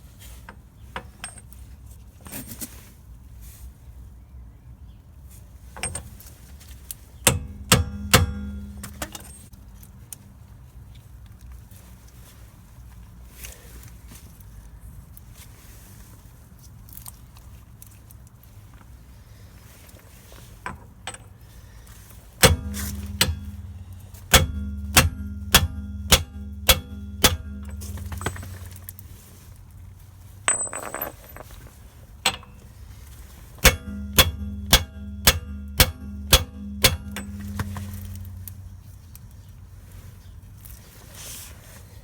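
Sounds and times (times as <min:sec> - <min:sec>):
hammer striking metal: 0:07.3 - 0:09.2, 0:22.4 - 0:28.9, 0:33.6 - 0:38.8.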